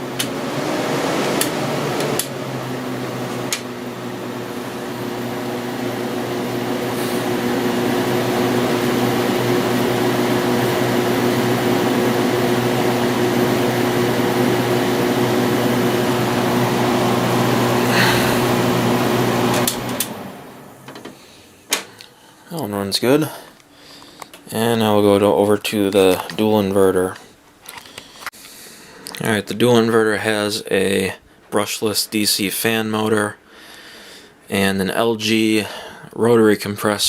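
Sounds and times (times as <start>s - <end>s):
air conditioner fan rushing: 0.0s - 28.3s
compressor hum: 0.0s - 36.0s
air conditioner clicks: 0.1s - 0.4s, 1.4s - 2.4s, 3.4s - 3.7s, 19.5s - 20.2s.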